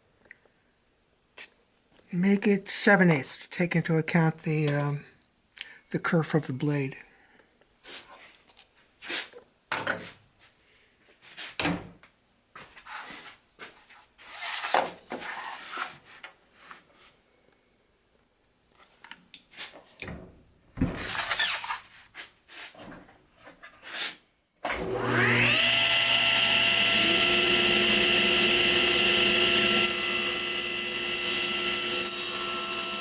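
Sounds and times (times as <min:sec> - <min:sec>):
knocks and clunks of wood and tools: 0:09.7 - 0:10.2, 0:11.6 - 0:12.1, 0:20.0 - 0:21.2.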